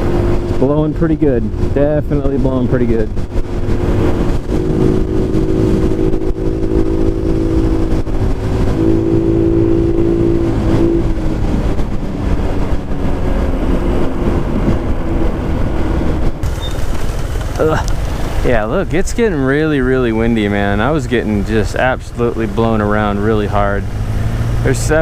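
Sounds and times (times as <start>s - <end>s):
scooter engine cruising: 0.0s - 25.0s
wind buffeting microphone: 0.0s - 25.0s.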